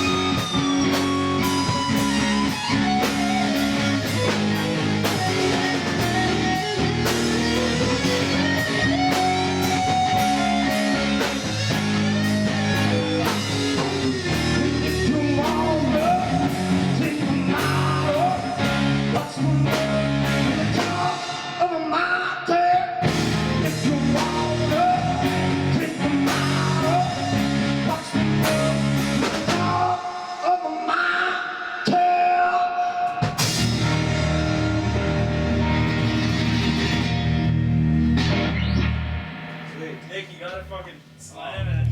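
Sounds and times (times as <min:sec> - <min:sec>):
bending lead guitar line: 0:00.0 - 0:21.5, 0:23.0 - 0:30.0, 0:33.4 - 0:41.9
drum kit steady beat: 0:00.0 - 0:21.8, 0:23.0 - 0:29.9, 0:33.2 - 0:37.5
electric guitar chords: 0:00.0 - 0:21.9, 0:23.0 - 0:30.4, 0:33.2 - 0:41.9.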